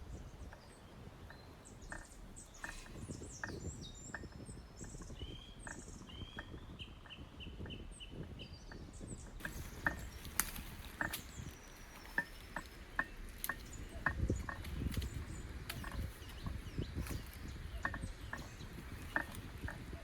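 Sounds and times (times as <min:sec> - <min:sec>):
small birds chirping: 0:00.0 - 0:20.0
low crunching rustle: 0:09.2 - 0:20.0
light clicks: 0:09.4 - 0:19.9.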